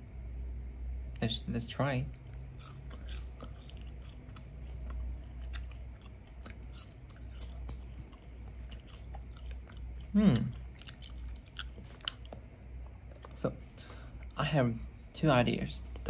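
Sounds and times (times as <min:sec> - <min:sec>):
steady low hum: 0:00.0 - 0:16.0
person chewing snack: 0:02.1 - 0:14.4.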